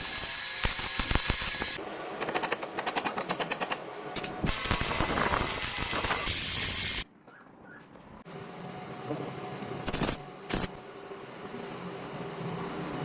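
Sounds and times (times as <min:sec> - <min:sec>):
hissing spray: 0:04.5 - 0:07.1.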